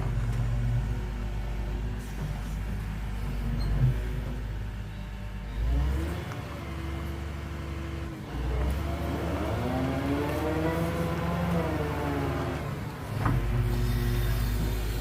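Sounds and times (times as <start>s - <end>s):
excavator diesel engine: 0.0s - 15.0s
hydraulic whine: 8.2s - 15.0s.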